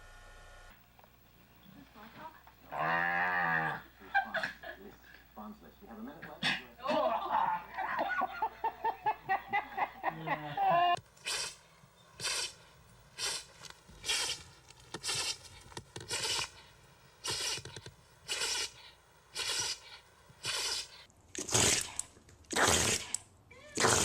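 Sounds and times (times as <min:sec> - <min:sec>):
animal sneezing: 0:11.2 - 0:11.6, 0:12.2 - 0:12.6, 0:13.2 - 0:14.4, 0:15.0 - 0:15.5, 0:16.1 - 0:16.6, 0:17.2 - 0:17.7, 0:18.3 - 0:23.2, 0:23.8 - 0:24.0.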